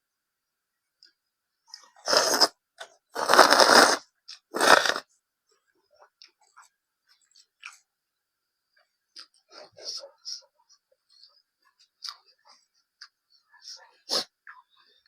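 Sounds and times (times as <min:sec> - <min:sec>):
soft chewing clicks: 0:01.0 - 0:02.0, 0:05.5 - 0:08.0, 0:08.7 - 0:13.8
loud crunching bites: 0:03.2 - 0:04.0, 0:04.6 - 0:05.0.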